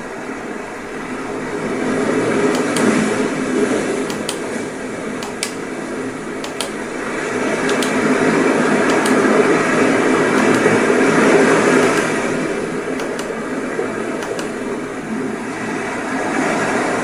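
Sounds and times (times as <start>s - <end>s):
short sharp clicks: 1.8s - 15.0s.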